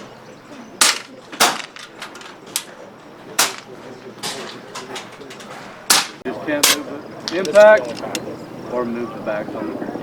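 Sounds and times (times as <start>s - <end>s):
air rifle shots: 0.8s - 2.8s, 3.4s - 4.4s, 5.9s - 8.2s.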